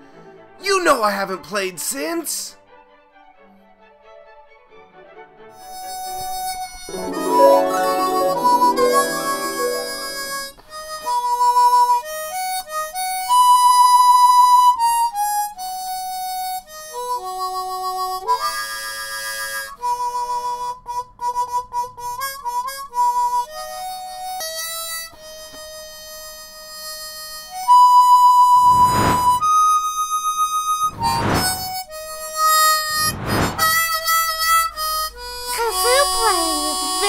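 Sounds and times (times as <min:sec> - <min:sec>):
kazoo playing slow melody: 0:06.9 - 0:10.5, 0:11.4 - 0:28.6, 0:34.3 - 0:37.0.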